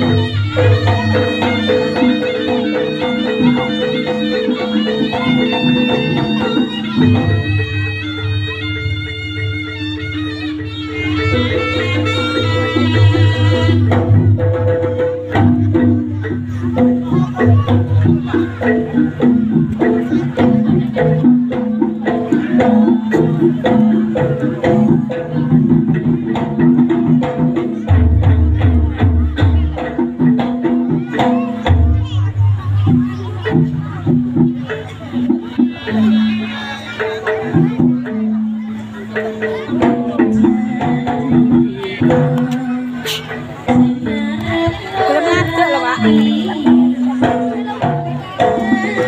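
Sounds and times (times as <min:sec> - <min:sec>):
reedy pipe melody: 0:00.0 - 0:15.4, 0:40.2 - 0:47.2
drums: 0:00.0 - 0:49.0
gamelan percussion ensemble: 0:00.0 - 0:49.0.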